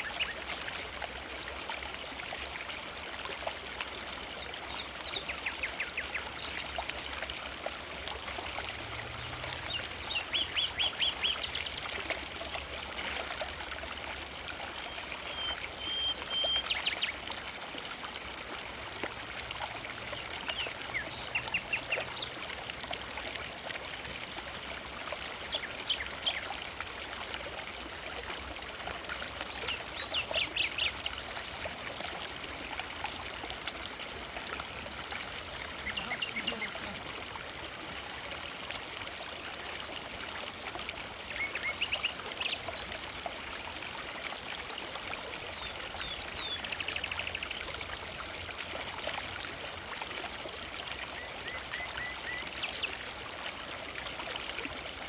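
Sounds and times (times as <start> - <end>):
river water flowing: 0.0 - 55.0
birds chirping: 35.2 - 37.1.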